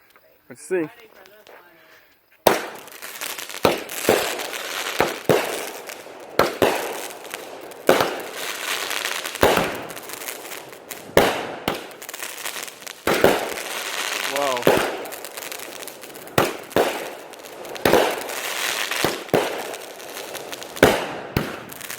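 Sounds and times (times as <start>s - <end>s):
firework crackling hiss: 0.0s - 21.9s
firework bangs: 2.4s - 21.9s.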